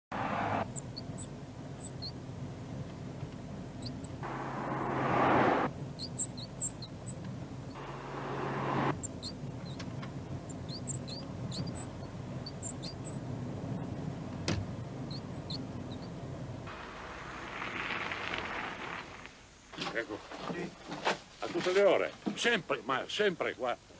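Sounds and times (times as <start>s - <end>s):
engine and road noise hum: 0.0s - 20.6s
high-pitched squeaks and chirps: 0.6s - 2.3s, 3.8s - 13.9s, 15.0s - 16.2s.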